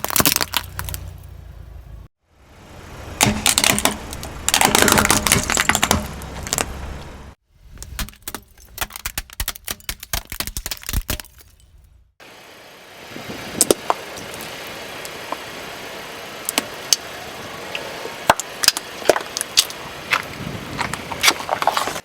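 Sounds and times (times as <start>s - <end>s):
tyre crushing brittle objects: 0.0s - 1.3s, 3.2s - 6.8s, 7.7s - 11.8s, 18.2s - 22.0s
low engine rumble: 0.0s - 7.4s, 11.6s - 22.0s.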